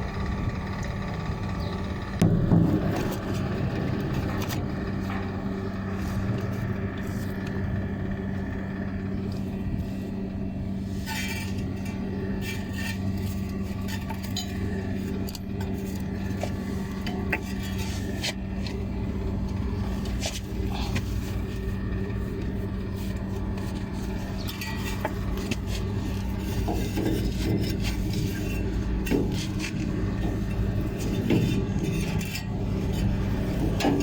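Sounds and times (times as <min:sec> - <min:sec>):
low electrical hum: 0:00.0 - 0:34.0
metallic clinks and scrapes: 0:10.8 - 0:18.8, 0:19.4 - 0:34.0.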